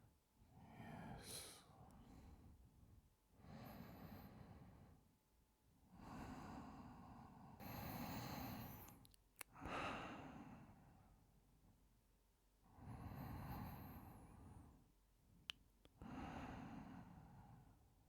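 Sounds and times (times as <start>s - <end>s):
small click: 8.8s - 9.5s.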